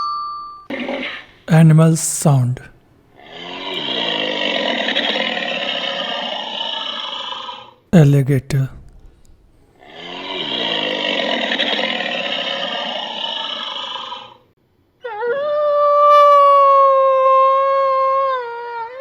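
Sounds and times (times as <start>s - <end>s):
alligator rasping call: 0.7s - 1.4s, 3.2s - 7.8s, 9.8s - 14.5s
wolf howling: 3.2s - 7.8s, 9.8s - 14.4s, 15.0s - 19.0s.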